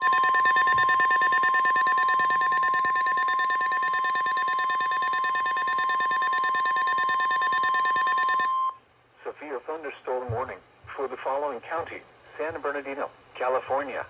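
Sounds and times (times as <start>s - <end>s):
steady alarm tone: 0.0s - 8.8s.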